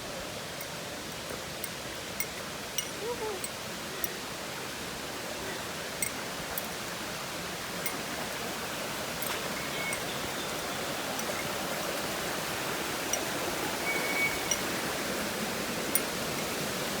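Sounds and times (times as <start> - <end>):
waterfall rushing: 0.0 - 17.0
faint whistles: 9.6 - 11.4, 13.8 - 14.6.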